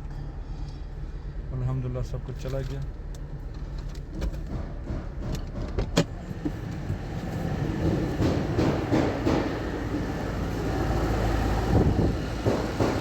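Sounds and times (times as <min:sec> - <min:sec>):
car engine running smoothly: 0:05.2 - 0:13.0.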